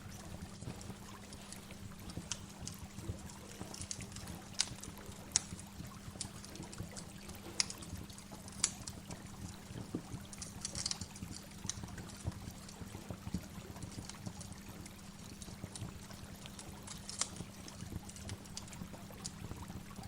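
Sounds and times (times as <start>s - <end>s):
water splashes and drips: 0.0s - 20.0s.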